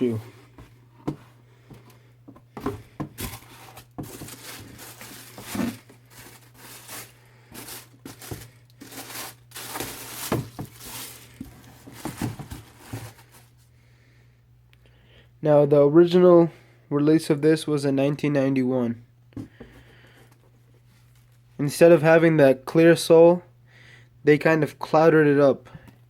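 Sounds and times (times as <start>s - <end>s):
knocks and scrapes of shoe box: 0.0s - 13.5s
paper rustling and crinkling: 2.6s - 13.6s.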